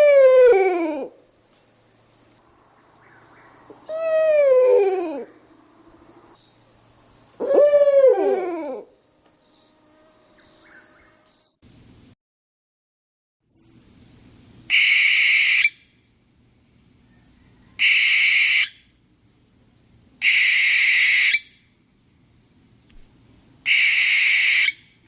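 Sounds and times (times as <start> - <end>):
owl high-pitched calls: 3.9 - 5.4, 14.7 - 15.9, 17.1 - 18.9, 20.2 - 21.6, 23.6 - 25.0.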